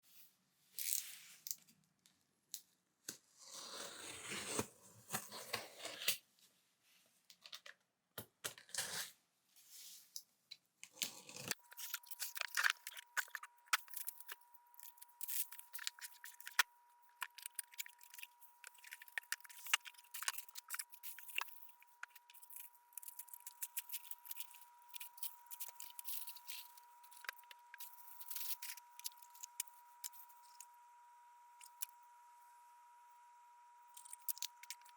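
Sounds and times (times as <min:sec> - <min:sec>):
packaging tearing and ripping: 0:11.0 - 0:16.6.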